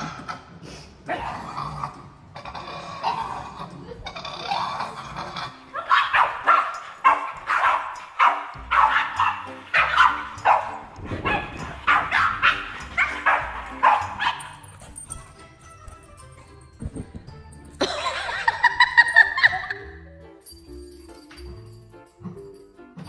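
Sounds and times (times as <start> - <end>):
background music: 0.0 - 23.0
dog barking: 5.7 - 15.4
dog howling: 5.7 - 15.4.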